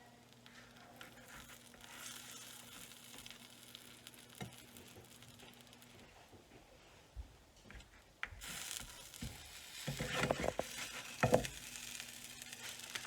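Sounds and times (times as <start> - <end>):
food sizzling in a frying pan: 0.0 - 6.2, 8.4 - 13.0
spatula scraping and knocking pan: 9.2 - 11.6.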